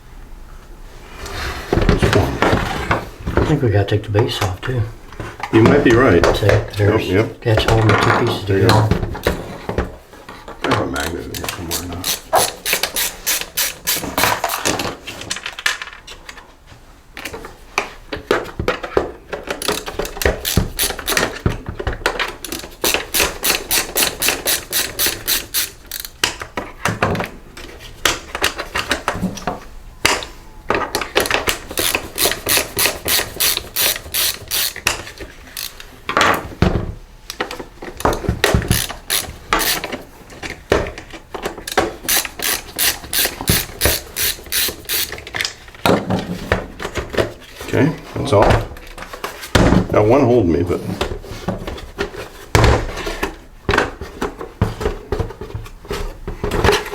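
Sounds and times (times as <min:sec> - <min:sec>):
ratcheting screwdriver clicking: 0:11.0 - 0:14.8, 0:19.6 - 0:21.4, 0:22.4 - 0:26.4, 0:31.4 - 0:35.9, 0:38.1 - 0:40.0, 0:41.7 - 0:45.3.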